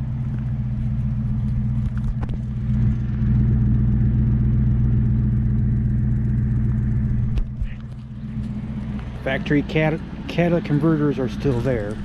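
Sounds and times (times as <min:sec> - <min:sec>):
car exhaust rumble: 0:00.0 - 0:12.0.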